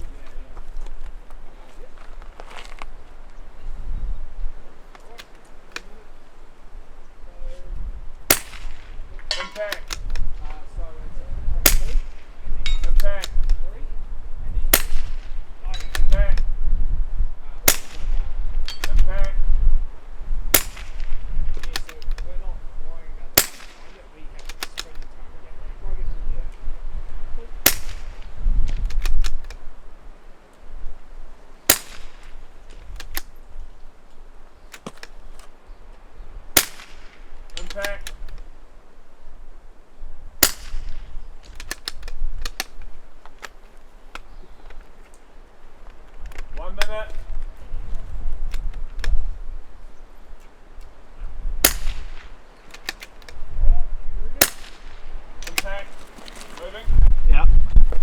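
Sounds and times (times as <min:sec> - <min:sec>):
rifle shots: 0:08.2 - 0:10.3, 0:11.6 - 0:13.4, 0:14.7 - 0:16.3, 0:17.6 - 0:19.2, 0:20.5 - 0:22.0, 0:23.4 - 0:25.1, 0:27.6 - 0:29.5, 0:31.7 - 0:33.4, 0:36.5 - 0:38.2, 0:40.4 - 0:42.8, 0:51.6 - 0:53.3, 0:54.4 - 0:56.0.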